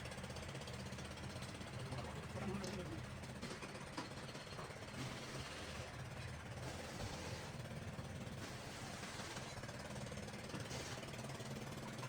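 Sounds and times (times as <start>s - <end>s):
engine running with rattling pulse: 0.0s - 12.0s.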